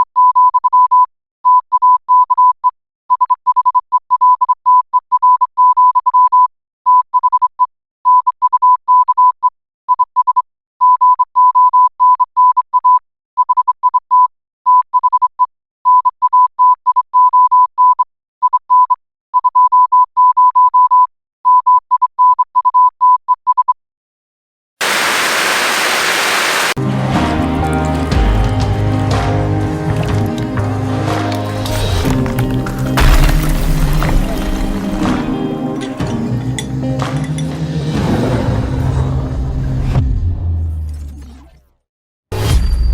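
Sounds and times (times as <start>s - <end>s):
static hiss: 24.8s - 26.8s.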